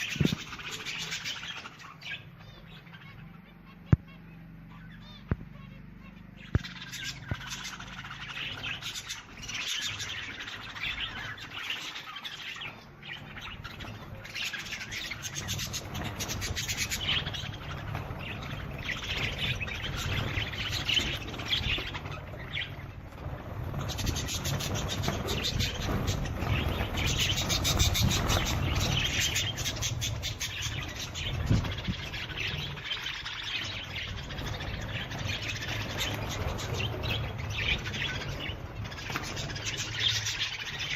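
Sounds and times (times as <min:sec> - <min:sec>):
birds chirping and twittering: 0:00.0 - 0:40.9
low steady rumble: 0:12.2 - 0:40.6.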